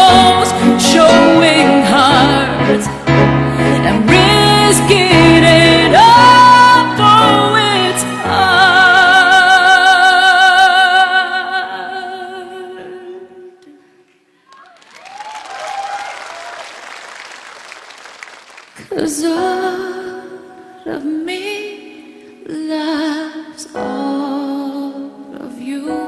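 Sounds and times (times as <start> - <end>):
soft musical backing: 0.0 - 13.8, 18.8 - 26.0
person singing with vibrato: 0.0 - 14.2, 18.8 - 26.0
audience applauding: 14.5 - 18.9.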